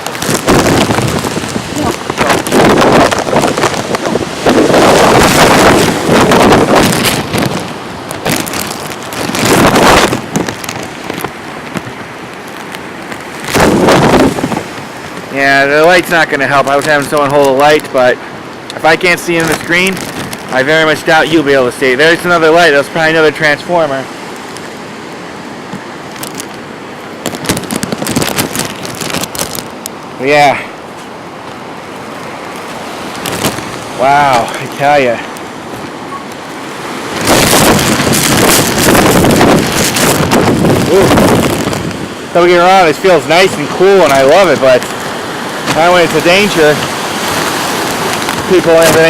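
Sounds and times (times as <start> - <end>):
rapid crackling and clattering: 0.0 - 15.3, 19.1 - 21.1, 27.2 - 30.5, 32.0 - 36.0, 36.8 - 49.0
rain: 0.0 - 49.0
wind buffeting microphone: 0.0 - 49.0
wind gusting through trees: 0.0 - 49.0.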